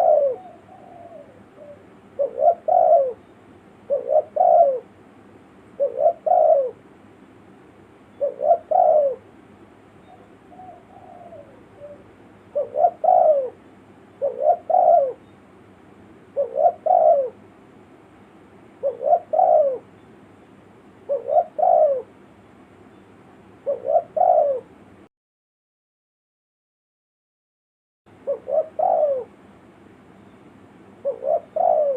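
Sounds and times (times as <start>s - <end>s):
dove cooing: 0.0s - 5.0s, 5.8s - 6.8s, 8.1s - 9.3s, 10.0s - 15.3s, 16.3s - 17.4s, 18.8s - 20.0s, 21.0s - 22.2s, 23.6s - 24.8s, 28.2s - 29.4s, 31.0s - 31.9s.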